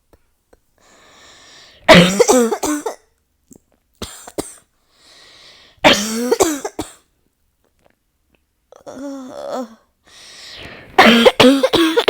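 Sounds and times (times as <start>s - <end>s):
breath in: 0.8s - 1.9s, 4.9s - 5.8s, 10.0s - 11.0s
person coughing: 1.9s - 3.0s, 5.8s - 7.0s, 11.0s - 12.0s.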